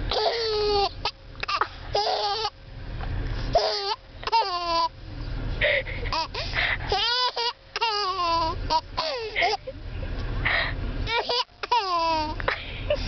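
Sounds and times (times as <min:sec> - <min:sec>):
car road rumble: 0:00.0 - 0:13.0
baby laughing: 0:00.1 - 0:02.5, 0:03.6 - 0:04.9, 0:05.6 - 0:09.7, 0:11.1 - 0:13.0.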